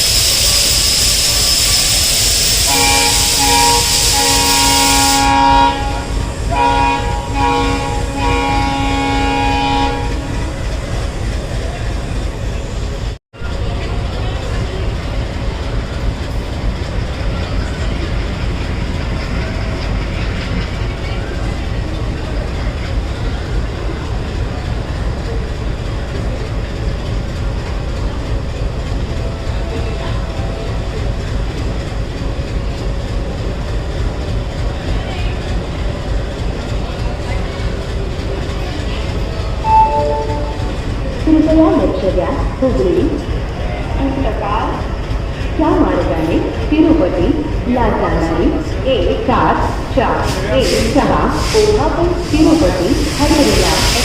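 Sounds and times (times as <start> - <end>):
loud hiss of air: 0.0 - 5.4, 50.2 - 54.0
train rumbling along track: 0.0 - 54.0
locomotive horn blasts: 2.6 - 10.6, 39.6 - 40.8.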